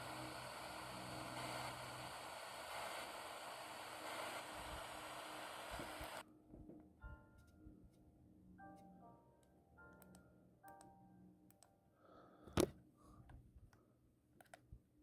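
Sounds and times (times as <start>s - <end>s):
radio static hiss: 0.0s - 6.2s.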